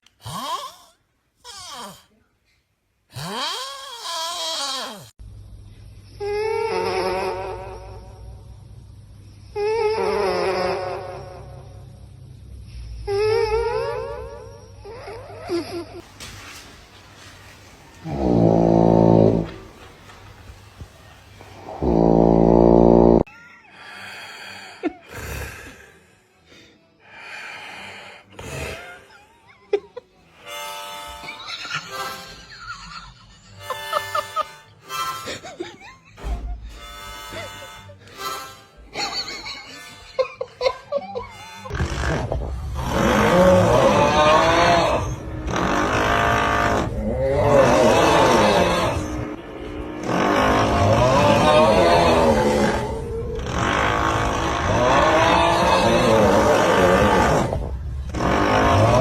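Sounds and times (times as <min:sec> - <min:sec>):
wheezy snoring: 0:09.5 - 0:11.9, 0:18.0 - 0:19.8, 0:21.4 - 0:23.3, 0:41.7 - 0:59.0.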